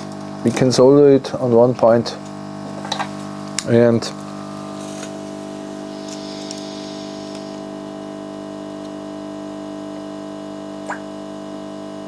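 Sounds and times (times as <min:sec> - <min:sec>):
electrical hum: 0:00.0 - 0:12.0
faint small ticks: 0:06.1 - 0:07.5.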